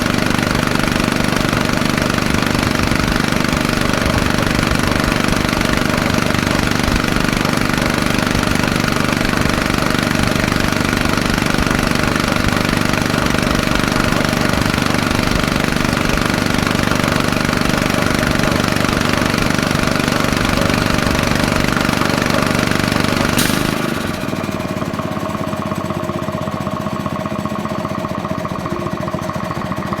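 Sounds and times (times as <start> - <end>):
diesel compressor engine running: 0.0 - 30.0
hiss: 23.3 - 24.4.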